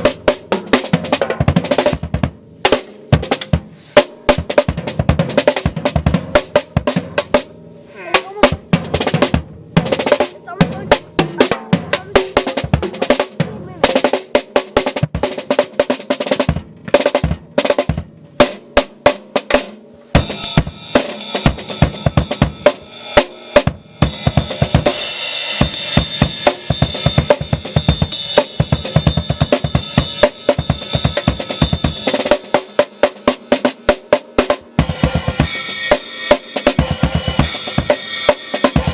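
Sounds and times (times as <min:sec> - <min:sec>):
bass drum: 0:00.0 - 0:02.5, 0:04.3 - 0:07.5, 0:08.2 - 0:15.6, 0:16.4 - 0:18.2, 0:20.2 - 0:22.8, 0:23.6 - 0:25.0, 0:25.6 - 0:32.3, 0:34.6 - 0:36.0
snare drum fills and rolls: 0:00.0 - 0:07.5, 0:08.4 - 0:25.0, 0:25.6 - 0:38.9.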